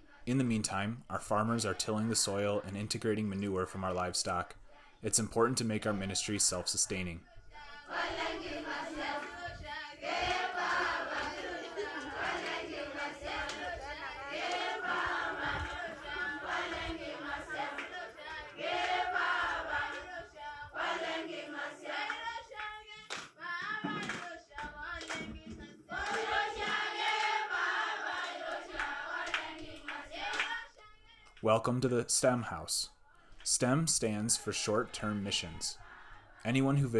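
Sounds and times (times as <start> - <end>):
group of people singing: 1.4 - 31.4, 34.0 - 36.9
hand clapping: 10.2 - 20.2, 22.0 - 27.4, 28.0 - 31.5.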